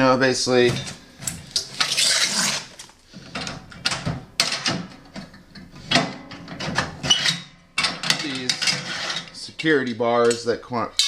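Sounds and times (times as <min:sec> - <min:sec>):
metal tool chest clanking: 0:00.6 - 0:01.5, 0:03.3 - 0:11.0.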